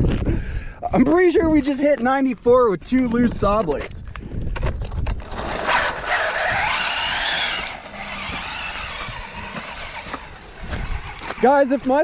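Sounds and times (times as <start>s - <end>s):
rc car electric motor whining: 5.2s - 12.0s
wheels hissing on ice: 5.2s - 12.0s.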